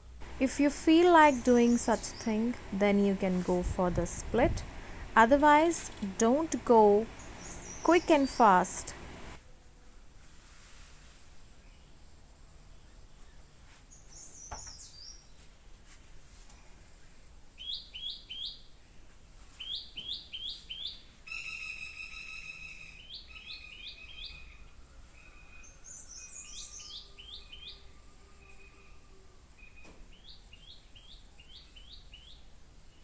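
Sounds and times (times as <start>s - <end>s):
birds chirping: 0.2s - 9.4s.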